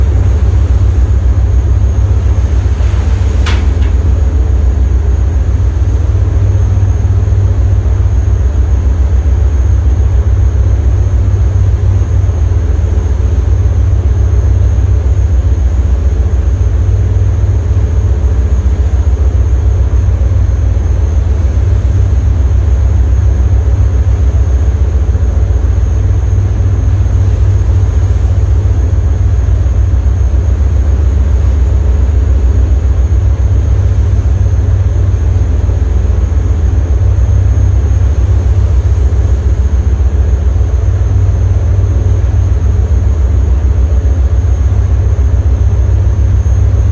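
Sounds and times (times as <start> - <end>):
boat engine droning: 0.0 - 46.9.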